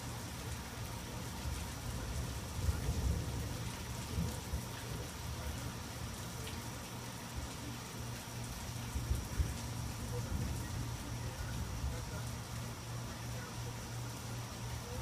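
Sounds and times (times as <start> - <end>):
steady rain falling: 0.0 - 15.0
thunder rumble: 1.4 - 5.3.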